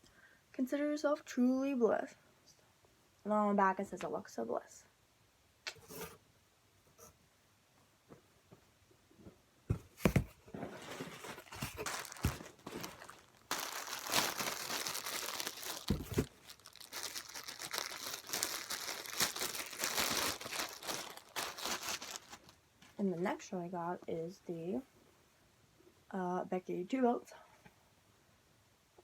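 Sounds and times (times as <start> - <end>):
packaging crinkling: 10.0 - 22.6.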